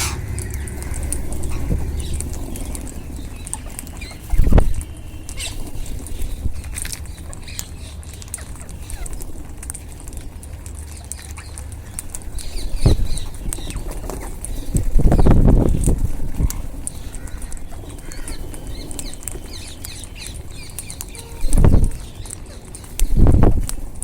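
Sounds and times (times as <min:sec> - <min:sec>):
parrot calls: 0:00.0 - 0:09.4
beaks pecking and cracking food: 0:00.0 - 0:24.0.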